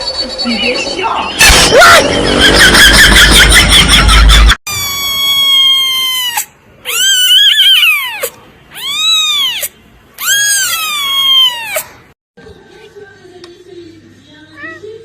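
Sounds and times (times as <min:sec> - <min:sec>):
cat meowing: 0:04.7 - 0:11.9.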